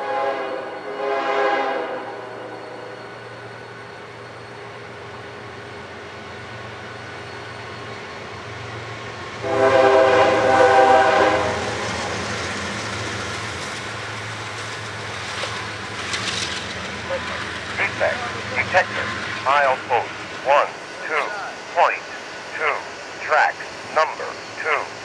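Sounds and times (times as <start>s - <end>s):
locomotive horn blast: 0.0s - 2.6s, 9.4s - 12.0s
train rumbling: 0.0s - 25.0s
wheels clicking over rail joints: 13.3s - 17.8s.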